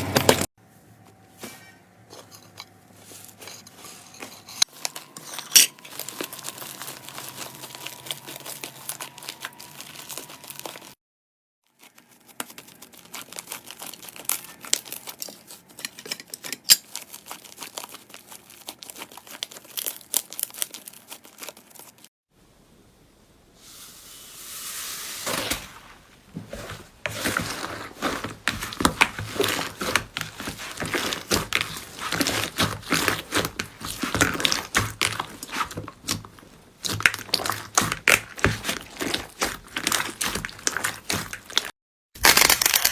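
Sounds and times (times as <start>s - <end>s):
slime crackling and popping: 11.8s - 15.2s, 16.9s - 22.0s, 27.1s - 42.9s.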